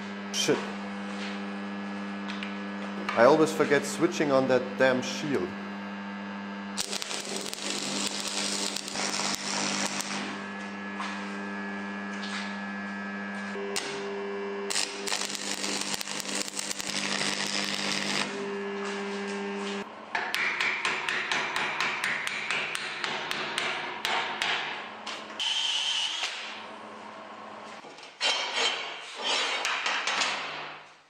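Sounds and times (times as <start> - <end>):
electrical hum: 0.0 - 20.1
welding arc crackling: 6.7 - 10.4, 13.6 - 19.8.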